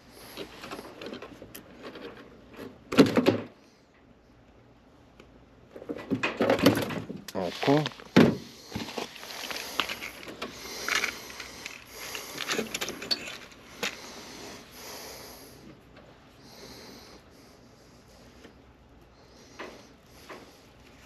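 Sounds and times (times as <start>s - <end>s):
hand tools and wiring clicking: 8.7s - 14.1s.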